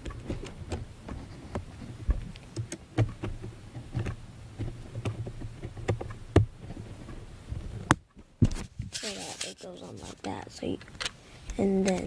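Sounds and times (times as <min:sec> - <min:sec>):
low steady hum: 0:00.0 - 0:12.0
plastic pieces clicking: 0:10.3 - 0:11.2.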